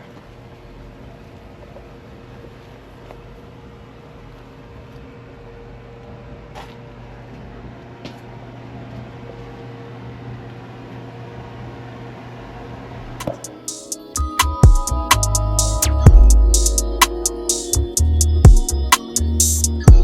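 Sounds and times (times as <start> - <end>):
low mechanical hum: 0.0 - 13.5.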